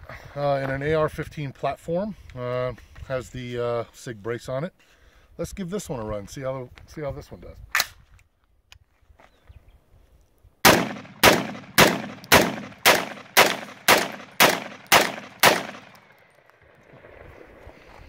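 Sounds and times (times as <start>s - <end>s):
pistol gunshots with echo: 10.6s - 16.2s.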